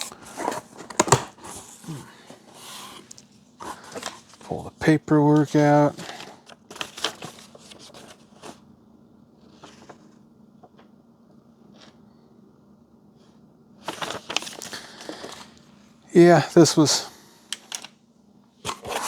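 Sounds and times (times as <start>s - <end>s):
paper and packing rustling: 0.0s - 8.7s, 9.4s - 10.8s, 13.8s - 15.8s, 18.7s - 19.0s.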